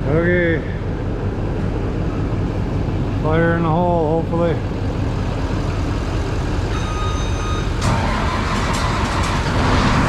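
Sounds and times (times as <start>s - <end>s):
engine rumble: 0.0s - 10.0s
warning beep: 6.7s - 7.8s
engine starting burst: 7.8s - 10.0s.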